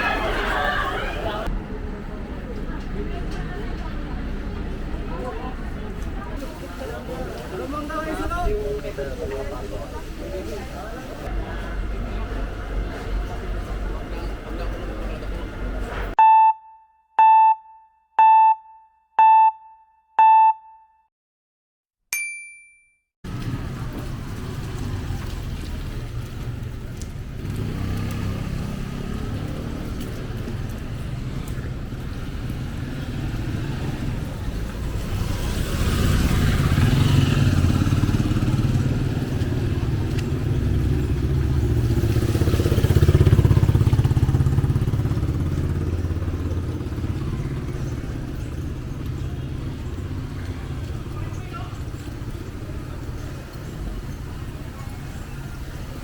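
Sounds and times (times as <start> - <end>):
motorcycle engines running: 0.0 - 16.2, 23.3 - 56.0
street traffic: 0.0 - 16.2, 23.3 - 56.0
short electronic beeps: 16.2 - 21.0.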